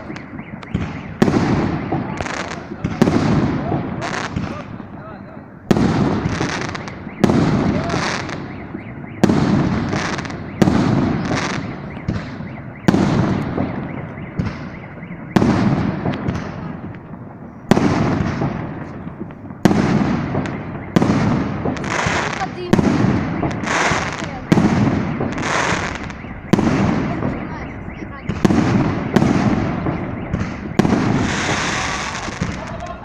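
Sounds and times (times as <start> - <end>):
fireworks bursting with sharp bangs: 0.0 - 33.0.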